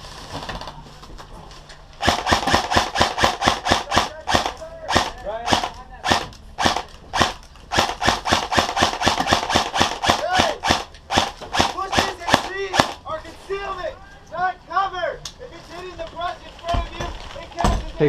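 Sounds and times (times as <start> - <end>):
airsoft rifle firing single shots: 2.0 - 13.0.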